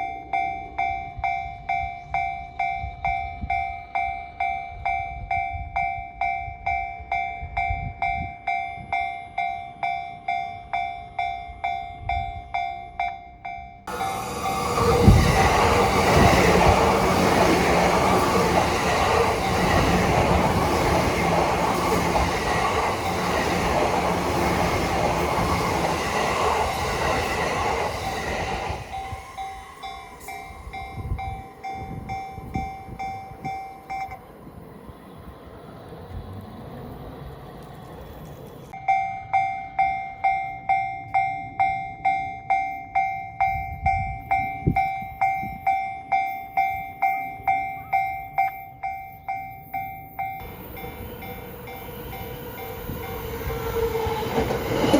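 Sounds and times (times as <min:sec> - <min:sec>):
railway crossing warning bell: 0:00.0 - 0:35.4, 0:38.7 - 0:54.9
train rushing rumble: 0:13.9 - 0:33.6, 0:34.2 - 0:38.8, 0:50.4 - 0:54.9.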